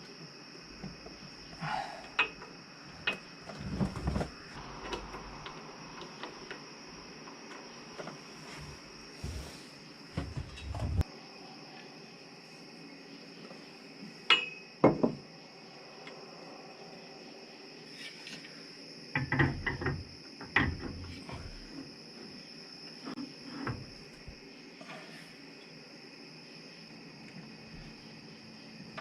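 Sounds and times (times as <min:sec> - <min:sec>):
crickets trilling: 0:00.0 - 0:29.0
tools knocking and clattering: 0:02.1 - 0:04.2, 0:19.1 - 0:21.2.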